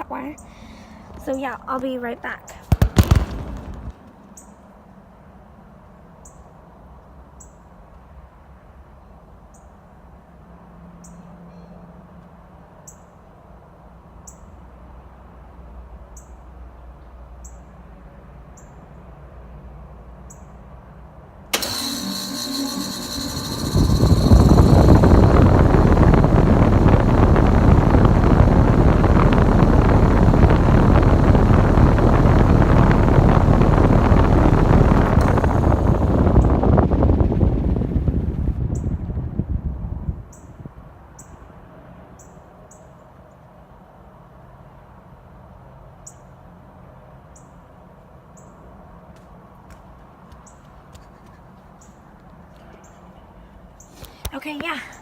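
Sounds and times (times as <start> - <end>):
compressor high whine: 21.5 - 39.0
condenser fan air rush: 21.5 - 40.7.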